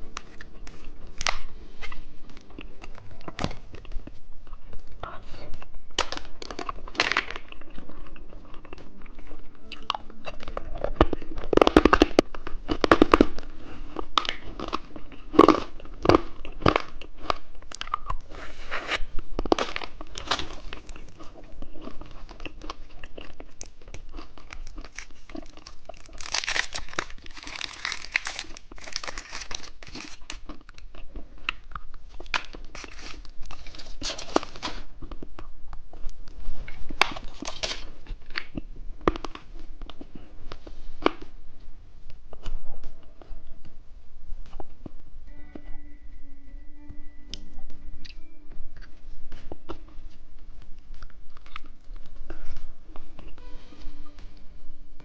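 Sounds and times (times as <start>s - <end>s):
plastic wrappers crinkling: 0.0s - 30.9s, 31.6s - 34.9s, 36.7s - 38.6s
crunching and chewing: 0.0s - 41.4s, 48.8s - 53.4s.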